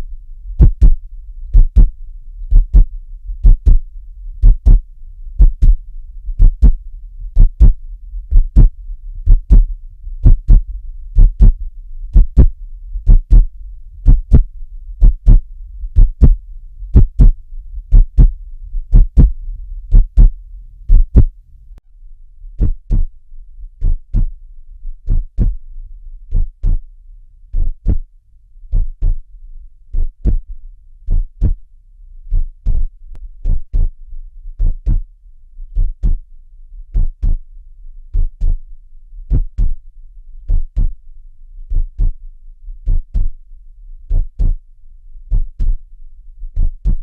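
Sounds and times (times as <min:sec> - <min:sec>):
faint steady hum: 0:00.0 - 0:47.0
heartbeat thumps: 0:00.6 - 0:21.3, 0:22.6 - 0:23.1, 0:23.8 - 0:24.4, 0:25.1 - 0:25.6, 0:26.3 - 0:26.9, 0:27.6 - 0:28.1, 0:28.7 - 0:29.3, 0:30.0 - 0:31.6, 0:32.3 - 0:34.0, 0:34.6 - 0:35.1, 0:35.8 - 0:36.3, 0:36.9 - 0:37.4, 0:38.1 - 0:38.6, 0:39.3 - 0:39.8, 0:40.5 - 0:41.0, 0:41.7 - 0:42.2, 0:42.8 - 0:43.4, 0:44.1 - 0:44.6, 0:45.3 - 0:45.8, 0:46.6 - 0:47.0.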